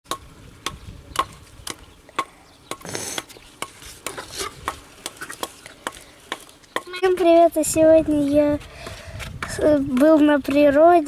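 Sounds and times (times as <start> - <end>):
scraping rustle: 2.9 - 6.7.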